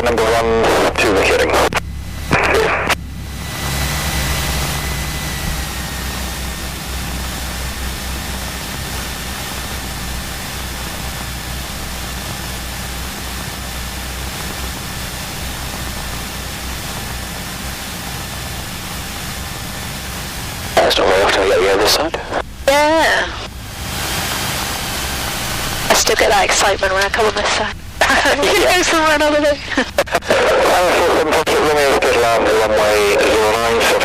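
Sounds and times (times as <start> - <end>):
faint high whine: 0.0 - 34.0
piston aircraft engine droning: 0.0 - 34.0.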